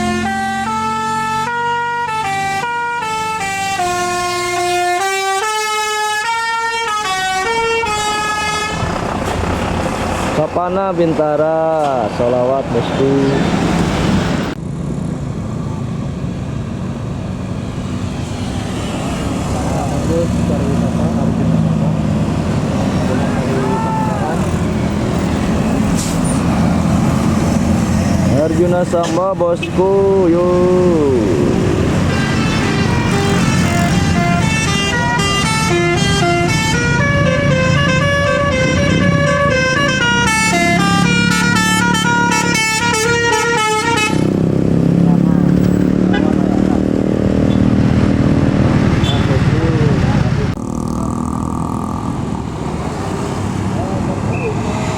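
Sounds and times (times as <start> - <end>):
musical bus horn melody: 0.0 - 8.9, 32.0 - 44.3
diesel bus engine drone: 0.0 - 54.9.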